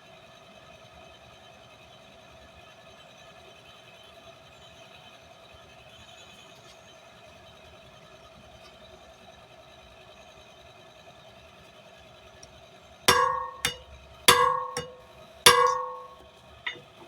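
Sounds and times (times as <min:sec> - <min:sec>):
hammer ringing on anvil: 0:13.1 - 0:16.8
steady hum: 0:13.1 - 0:16.8.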